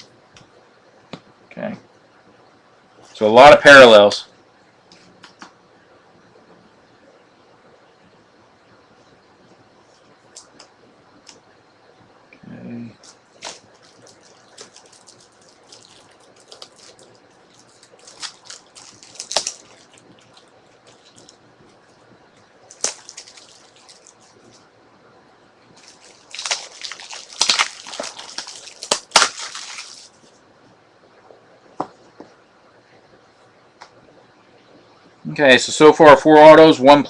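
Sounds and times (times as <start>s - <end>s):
cards and plastic rustling: 13.0s - 21.4s, 22.7s - 24.6s, 25.8s - 30.4s
plastic crinkling: 13.0s - 22.0s, 22.6s - 24.7s, 25.7s - 30.4s.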